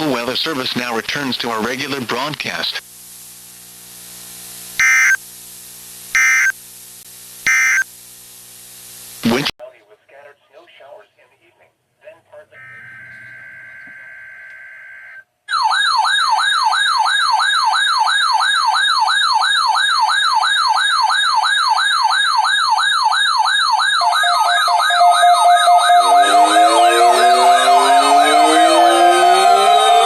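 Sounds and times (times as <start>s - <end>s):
steady alarm tone: 4.8s - 5.2s, 6.2s - 6.6s, 7.5s - 7.9s, 12.6s - 30.0s
weather radio siren warbling: 4.8s - 5.2s, 6.2s - 6.5s, 7.5s - 7.8s, 20.1s - 30.0s.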